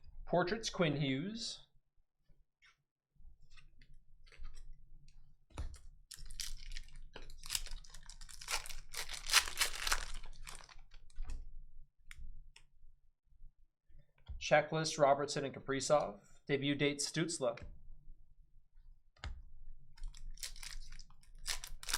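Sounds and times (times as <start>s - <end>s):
cards and wrappers rustling: 6.1s - 11.3s, 20.0s - 21.9s.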